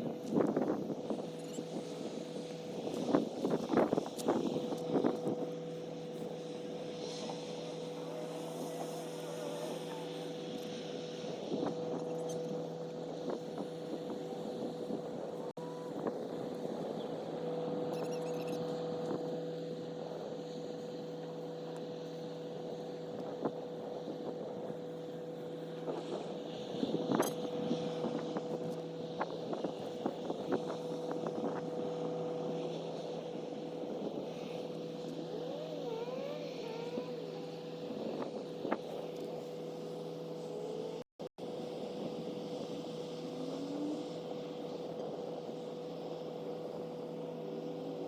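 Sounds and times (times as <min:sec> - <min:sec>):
constant whine: 0:00.0 - 0:48.0
wavering squeaks: 0:17.9 - 0:18.7, 0:35.1 - 0:37.6
diesel engine droning: 0:22.4 - 0:41.0, 0:41.6 - 0:48.0.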